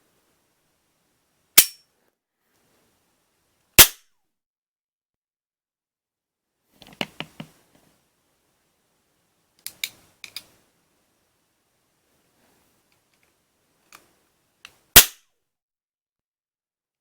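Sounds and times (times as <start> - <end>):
cap gun clicks: 15.0 - 15.2.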